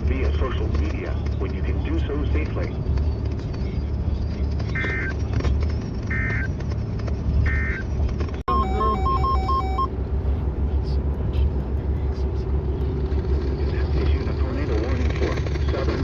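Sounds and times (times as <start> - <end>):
car road noise: 0.0 - 16.0
alternating electronic beeps: 8.5 - 9.9.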